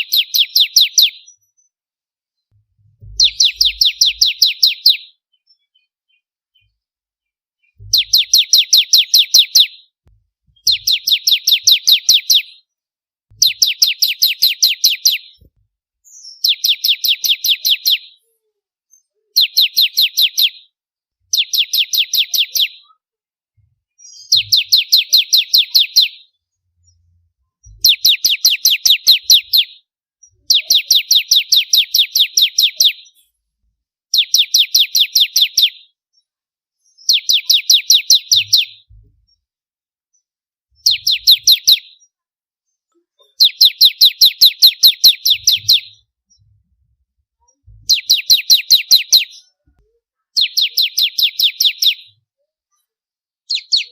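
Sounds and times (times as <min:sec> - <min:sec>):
bird singing high chipping notes: 0:03.2 - 0:05.7.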